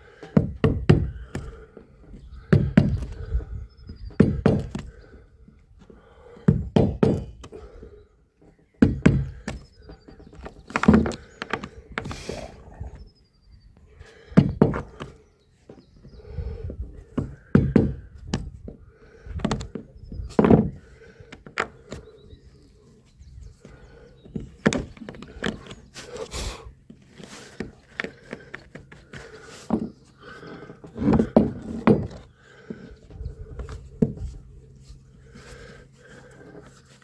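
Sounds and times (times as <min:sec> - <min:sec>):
hand tools knocking on wooden boards: 0:00.2 - 0:05.0, 0:06.4 - 0:07.5, 0:08.8 - 0:12.5, 0:14.3 - 0:15.8, 0:17.1 - 0:18.8, 0:19.4 - 0:22.0, 0:27.5 - 0:32.9.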